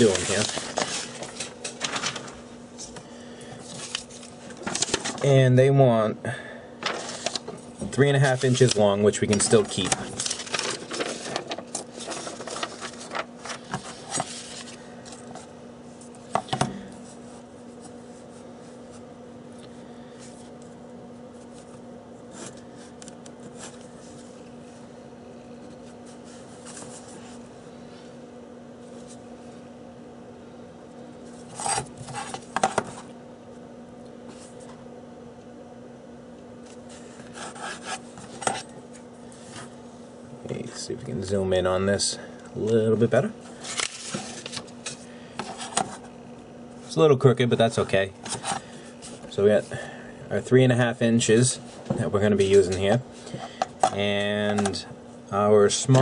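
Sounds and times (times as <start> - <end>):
paper rubbing and scratching: 0.0 - 2.4, 8.2 - 14.8, 36.9 - 38.7.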